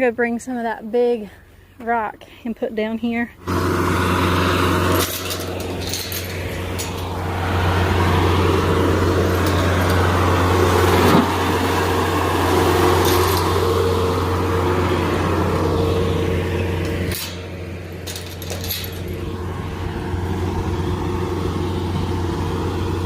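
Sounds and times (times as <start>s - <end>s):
engine running steadily: 1.0s - 23.0s
clicks and rattles: 4.6s - 14.4s, 16.8s - 19.5s.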